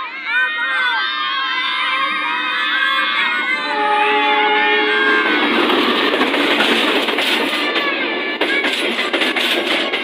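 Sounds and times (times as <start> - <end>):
children shouting and cheering: 0.0 - 10.0
train passing: 0.0 - 10.0
train horn: 2.4 - 5.6.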